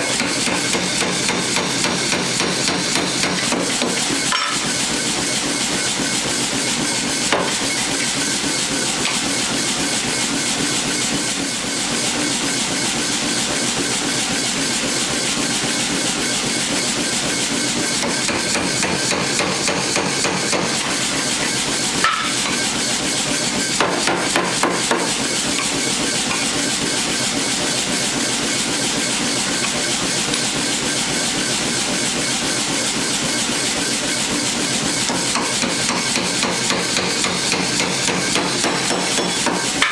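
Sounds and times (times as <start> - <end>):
hammer striking steel: 21.4 - 22.6, 35.9 - 39.9.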